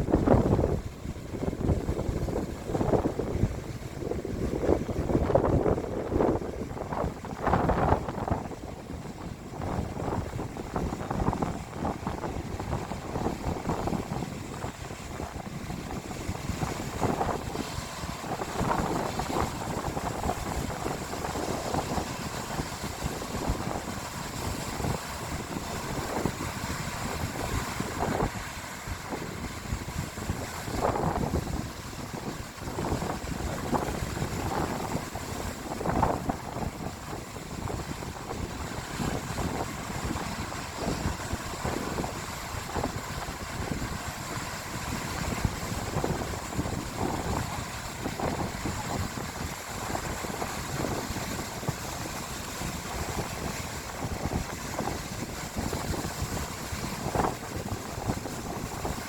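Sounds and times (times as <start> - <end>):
sea waves washing in: 0.0 - 59.0
wind rushing over microphone: 0.0 - 59.0.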